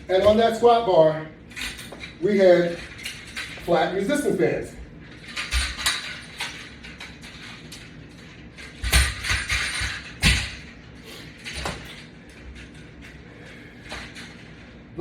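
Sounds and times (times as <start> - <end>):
metal clanks and rattles: 1.5 - 3.7, 5.0 - 13.2, 13.8 - 14.7.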